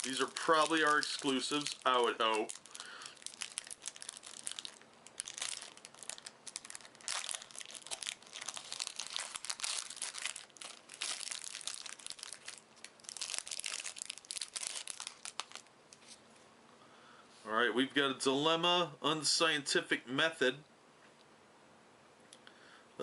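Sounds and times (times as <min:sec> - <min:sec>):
card wrapper crinkling and tearing: 0:00.0 - 0:16.0.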